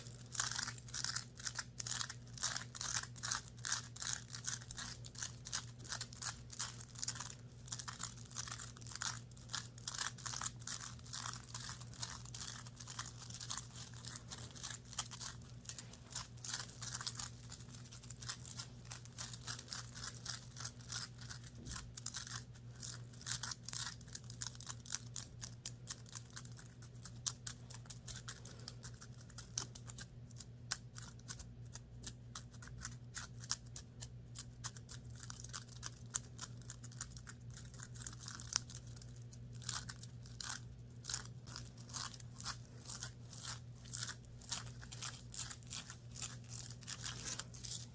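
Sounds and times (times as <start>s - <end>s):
scratching on fabric: 0.0s - 23.8s, 39.2s - 47.9s
steady low hum: 0.0s - 47.9s.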